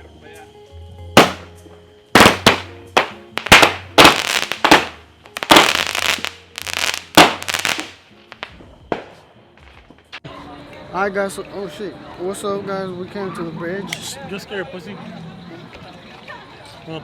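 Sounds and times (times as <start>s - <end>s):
faint music: 0.0s - 17.0s
firecrackers banging: 1.2s - 10.2s.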